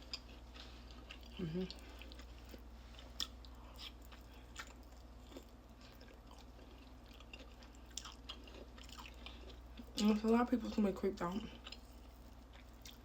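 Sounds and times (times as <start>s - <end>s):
chewing with small crunches: 0.0s - 13.0s
steady low hum: 0.0s - 13.0s.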